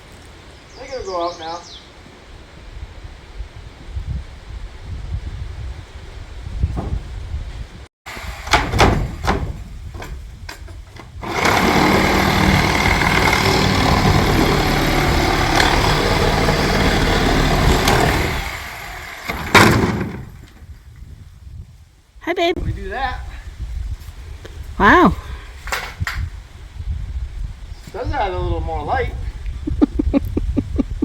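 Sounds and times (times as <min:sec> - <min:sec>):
motor running: 0:11.2 - 0:19.5.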